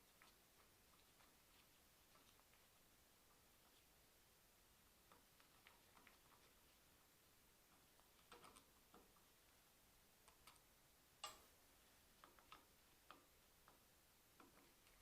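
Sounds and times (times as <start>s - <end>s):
small metal parts clicking: 11.2s - 11.5s.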